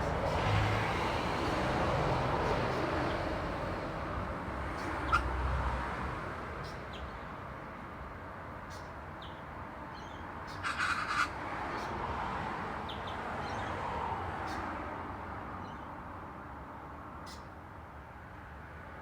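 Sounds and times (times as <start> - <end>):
vehicle passing: 0.0 - 6.3
road traffic: 0.0 - 19.0
bird harsh call: 10.5 - 11.9.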